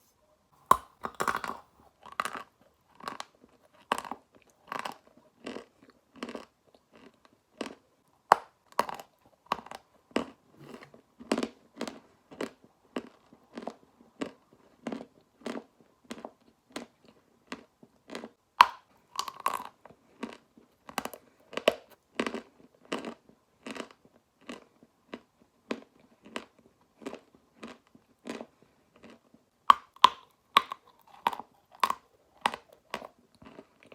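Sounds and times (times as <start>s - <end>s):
chalk being chewed: 29.0s - 33.9s.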